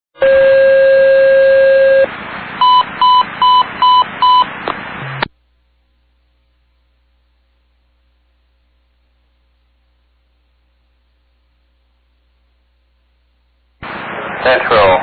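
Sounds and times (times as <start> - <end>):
dispatch alert tones: 0.2 - 4.5
radio hiss: 3.7 - 5.3, 13.8 - 15.0.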